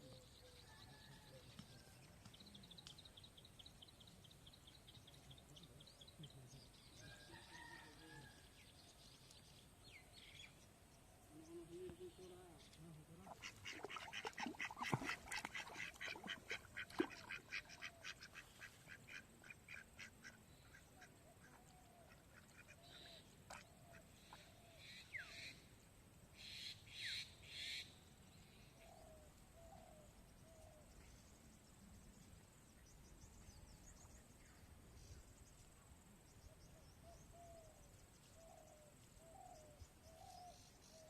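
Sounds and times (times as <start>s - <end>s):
ducks quacking: 13.2s - 20.4s.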